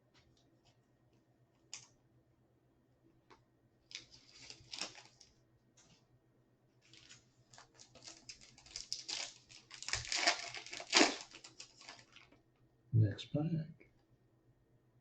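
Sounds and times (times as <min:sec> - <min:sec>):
card pack tearing open: 0:03.9 - 0:05.3, 0:06.9 - 0:12.3
card wrapper crinkling: 0:03.9 - 0:05.4, 0:06.8 - 0:12.4.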